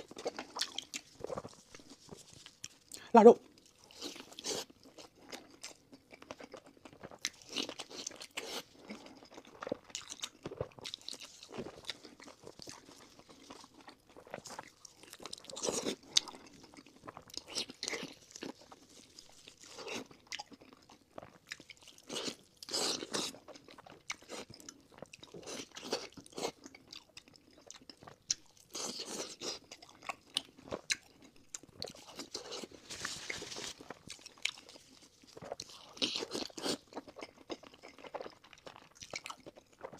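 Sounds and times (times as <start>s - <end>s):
chewing crunchy food: 0.0s - 39.9s.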